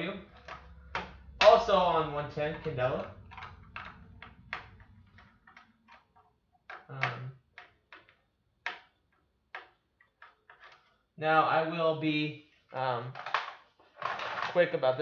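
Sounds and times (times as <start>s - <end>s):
hard plastic clicks and knocks: 0.3s - 1.7s, 2.5s - 10.9s.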